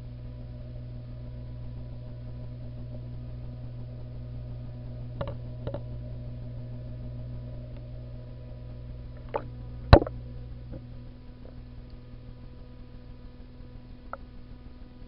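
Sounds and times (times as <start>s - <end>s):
steady low hum: 0.0s - 15.0s
sharp clicks and knocks: 5.2s - 5.8s, 9.2s - 10.1s.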